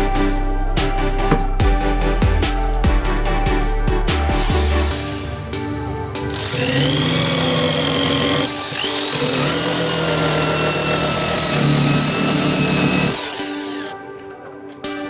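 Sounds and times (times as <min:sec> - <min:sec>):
power tool whining: 0:06.3 - 0:14.0.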